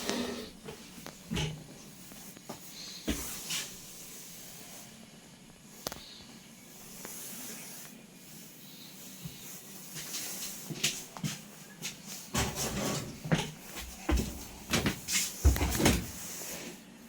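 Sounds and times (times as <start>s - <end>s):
objects knocking and clunking: 0.0s - 1.7s, 12.3s - 16.2s
rustling of objects: 9.2s - 16.7s.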